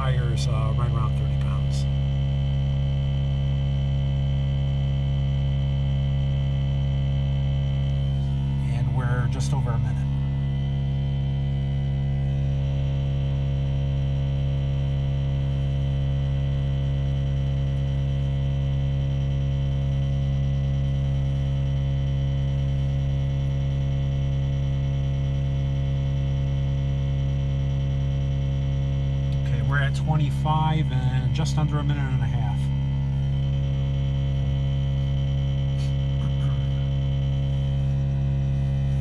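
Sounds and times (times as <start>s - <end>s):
air compressor humming: 0.0s - 39.0s.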